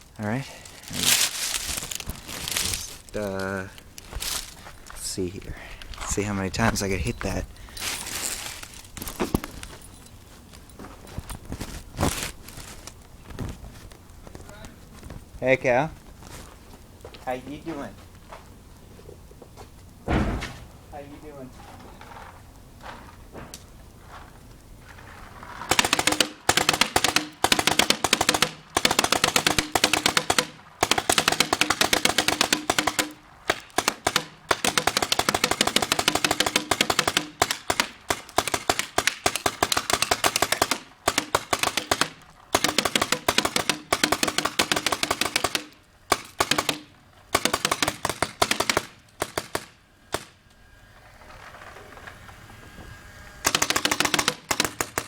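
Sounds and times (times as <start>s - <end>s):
paintball gun rapid shots: 25.6s - 50.4s, 53.4s - 55.0s.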